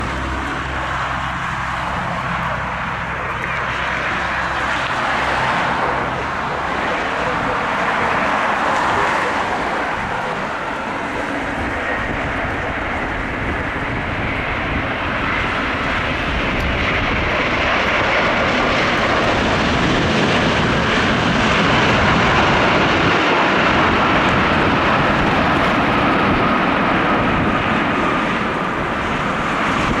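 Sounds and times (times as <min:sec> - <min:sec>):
faint engine whine: 0:00.0 - 0:30.0
jet plane landing: 0:00.0 - 0:30.0.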